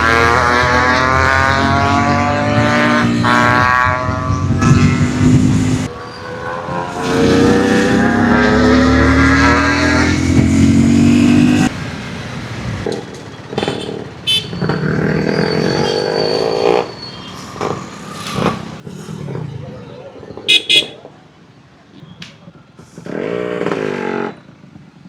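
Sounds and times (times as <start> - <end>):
two-stroke motorcycle engine accelerating: 0.0 - 16.9.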